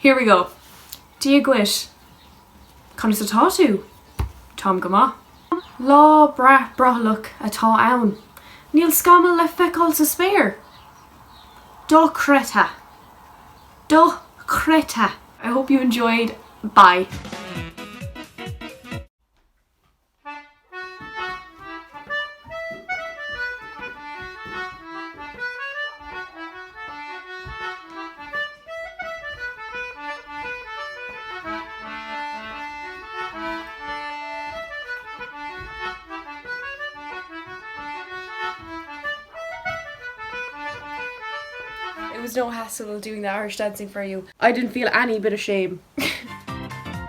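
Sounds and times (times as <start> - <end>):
dance tune on accordion: 13.9 - 19.1, 20.3 - 43.0.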